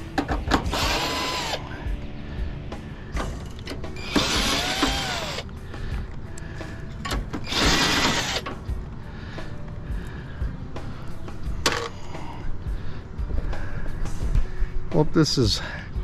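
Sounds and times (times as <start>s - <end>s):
power drill spinning screws: 0.6s - 1.7s, 4.0s - 5.4s, 7.4s - 8.4s.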